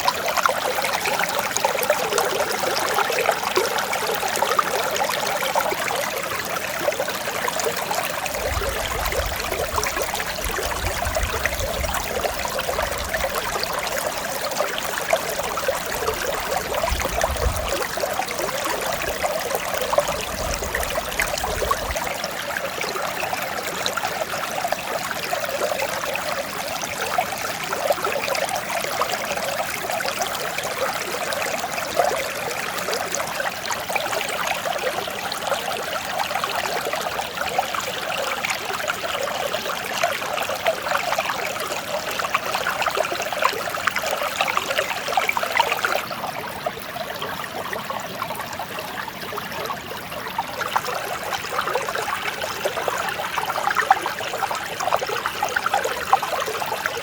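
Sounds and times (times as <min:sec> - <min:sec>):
stream babbling: 0:00.0 - 0:57.0.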